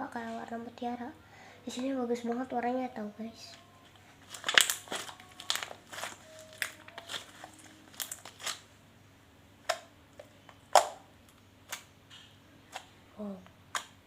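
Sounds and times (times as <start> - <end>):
slime sticky pops and crackles: 4.4 - 7.2, 13.7 - 14.0.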